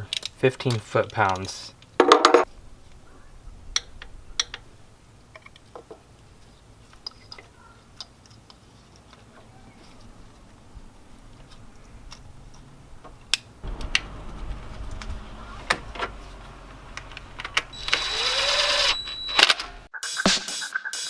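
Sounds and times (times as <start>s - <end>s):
low hum: 13.6s - 17.2s.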